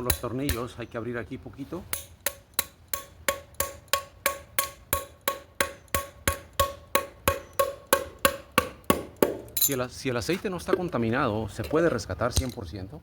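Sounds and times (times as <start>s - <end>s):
hammer tapping on metal: 0.0s - 0.8s, 1.9s - 9.8s.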